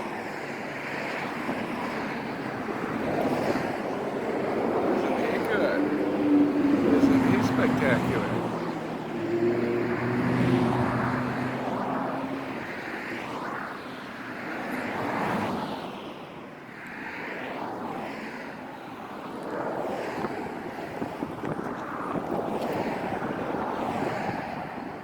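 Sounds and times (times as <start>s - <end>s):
wind noise: 19.4s - 25.0s.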